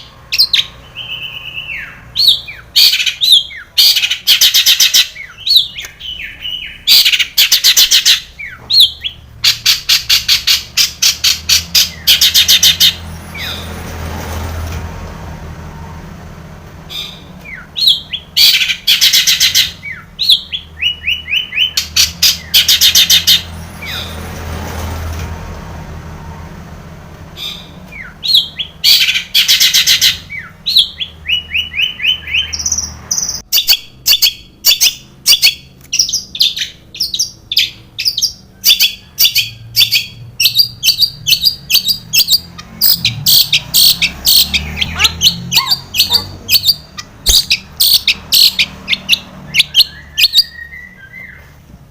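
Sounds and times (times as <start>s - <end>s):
bird sharp repeated calls: 0.0s - 13.8s, 16.9s - 24.2s, 27.3s - 51.6s
bird singing scratchy trills: 0.0s - 14.0s, 16.8s - 24.4s, 27.3s - 51.7s.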